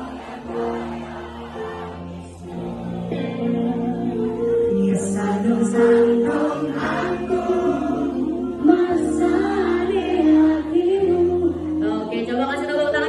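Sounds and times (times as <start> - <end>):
crowd singing along: 0.0 - 12.7.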